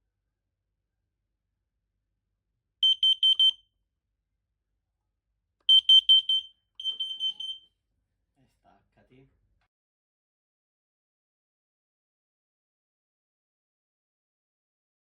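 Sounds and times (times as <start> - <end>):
carbon monoxide alarm beeping: 2.8 - 3.6, 5.7 - 7.7.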